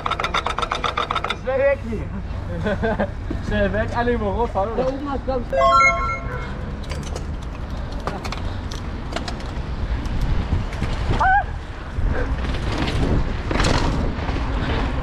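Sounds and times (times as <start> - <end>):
bike parts rattling and clicking: 0.0 - 1.5, 6.8 - 11.1, 12.2 - 14.7
rising and falling tone: 5.5 - 6.8
wind rumble on microphone: 9.5 - 15.0.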